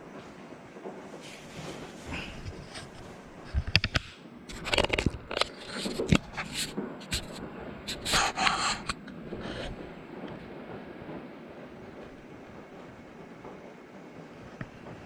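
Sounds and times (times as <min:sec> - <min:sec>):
rubbing scrapes: 0:01.0 - 0:03.8, 0:04.5 - 0:09.9.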